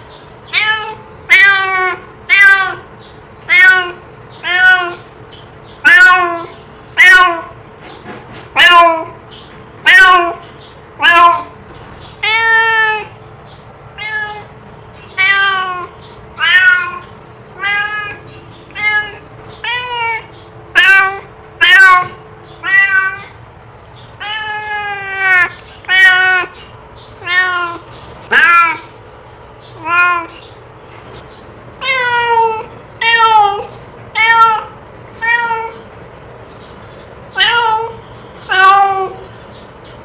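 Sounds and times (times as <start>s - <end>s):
cat meowing: 0.4s - 5.1s, 5.8s - 7.6s, 8.5s - 9.2s, 9.8s - 10.4s, 11.0s - 11.6s, 12.2s - 13.2s, 13.9s - 23.4s, 24.1s - 29.0s, 29.7s - 30.5s, 31.8s - 35.9s, 37.3s - 39.2s.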